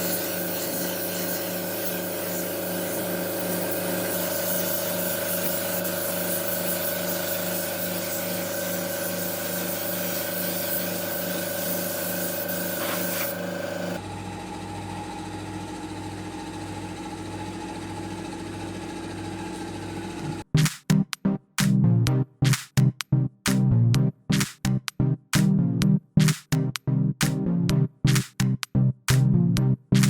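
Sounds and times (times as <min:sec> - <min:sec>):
power tool rasping on wood: 0:00.0 - 0:14.0
music: 0:20.5 - 0:30.0.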